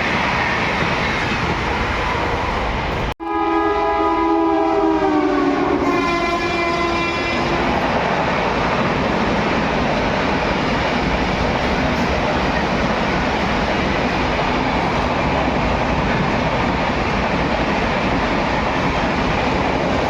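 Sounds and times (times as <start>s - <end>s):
train rumble and wheel clatter: 0.0s - 20.0s
locomotive horn blast: 3.2s - 7.8s.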